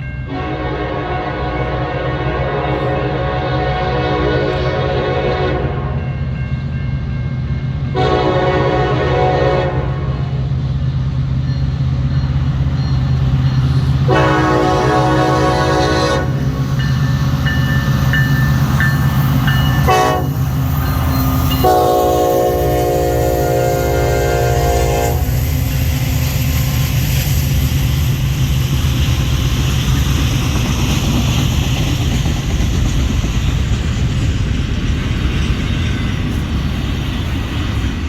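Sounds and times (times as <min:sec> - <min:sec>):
locomotive engine rumble: 0:00.0 - 0:38.0
locomotive air horn: 0:00.3 - 0:06.1, 0:07.9 - 0:10.4, 0:14.0 - 0:16.6, 0:19.8 - 0:20.5, 0:21.4 - 0:25.4.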